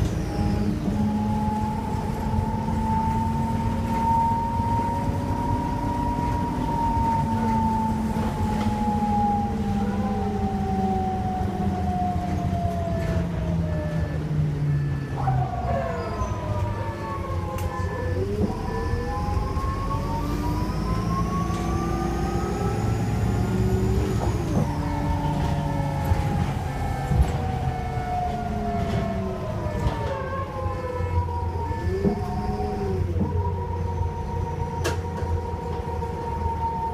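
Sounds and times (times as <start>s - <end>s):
bus diesel engine running: 0.0s - 36.9s.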